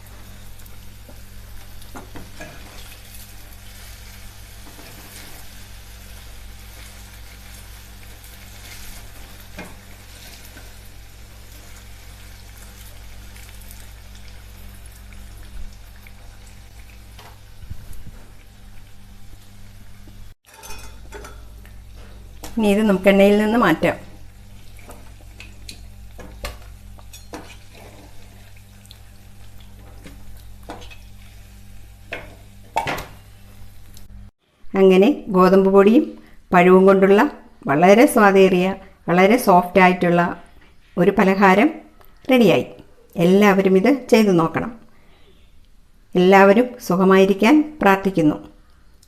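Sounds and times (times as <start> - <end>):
batter deep-frying in oil: 0.0 - 34.3.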